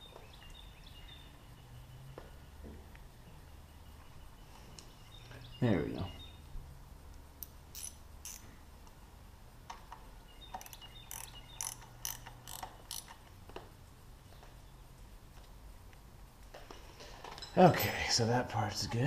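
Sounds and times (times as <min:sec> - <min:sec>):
small parts clicking and rattling: 0:07.4 - 0:08.5, 0:09.7 - 0:13.6.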